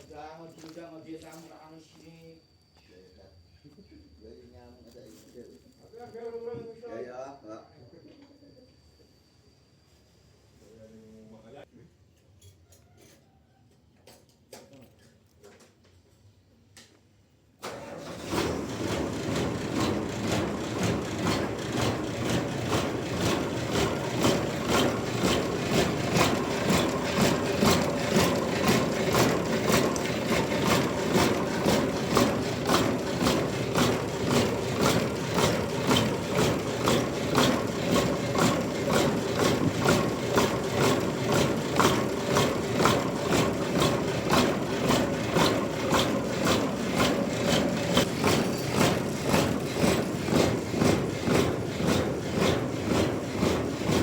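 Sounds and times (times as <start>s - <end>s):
engine running with rhythmic pulse: 17.7s - 54.0s.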